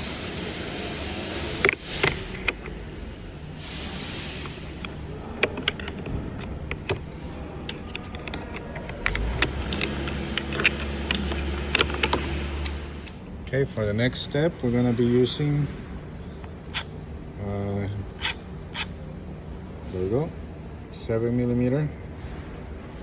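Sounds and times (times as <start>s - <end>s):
plastic trim clips snapping: 4.4s - 13.2s.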